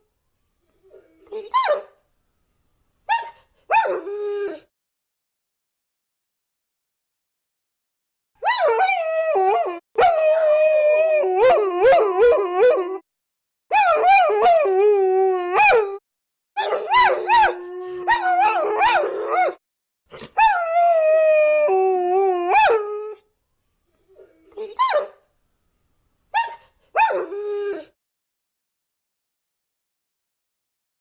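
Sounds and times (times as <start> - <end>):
dog yips: 1.3 - 2.0, 3.1 - 3.9, 24.6 - 25.2, 26.4 - 27.2
dogs howling: 16.6 - 19.6.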